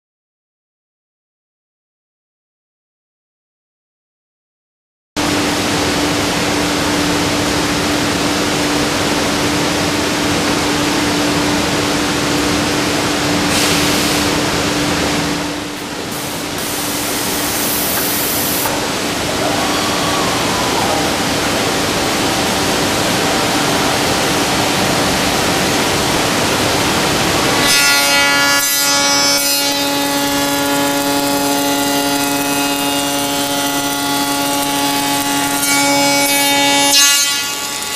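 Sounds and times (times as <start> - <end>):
high spindle whine: 14.8 - 36.1.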